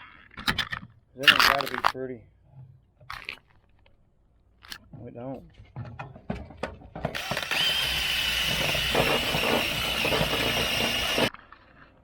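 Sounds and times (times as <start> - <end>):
power tool grinding metal: 7.1 - 11.3.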